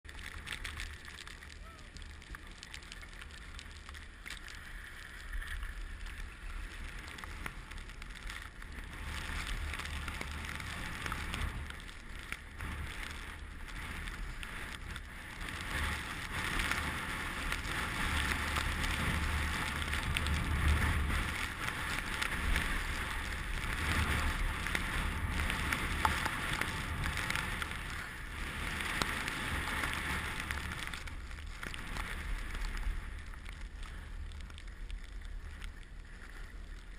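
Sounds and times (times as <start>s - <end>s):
wind rumbling on microphone: 0.0s - 36.9s
skis scraping over snow: 0.1s - 36.9s.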